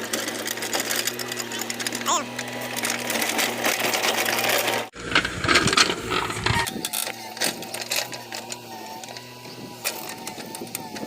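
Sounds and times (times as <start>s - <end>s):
excavator engine running: 0.0s - 11.0s
mechanical clicks and clanks: 0.1s - 11.0s.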